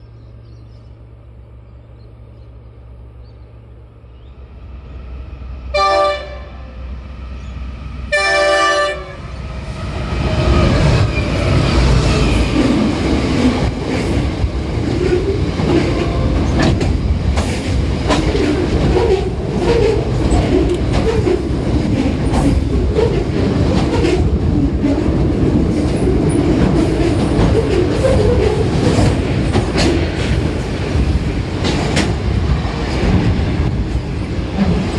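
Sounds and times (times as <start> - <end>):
diesel locomotive engines rumbling: 0.0 - 34.9
locomotive horn blasts: 5.7 - 6.8, 8.1 - 9.3
train wheels clattering on rails: 10.2 - 34.9.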